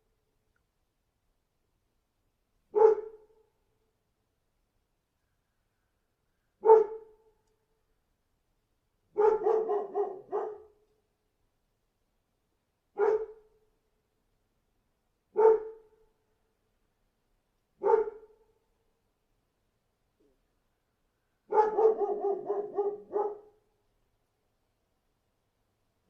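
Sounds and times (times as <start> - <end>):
dog barking: 2.7 - 3.4, 6.6 - 7.2, 9.1 - 10.8, 13.0 - 13.5, 15.3 - 16.0, 17.8 - 18.4, 21.5 - 23.6.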